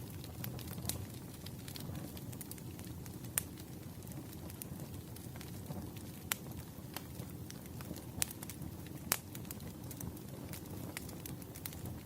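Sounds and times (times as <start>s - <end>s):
fireplace crackling and popping: 0.0s - 12.0s.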